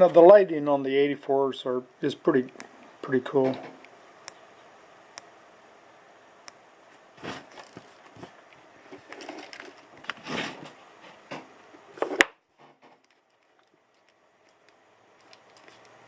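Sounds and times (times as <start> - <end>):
handling clicks and rustles: 7.2 - 16.0.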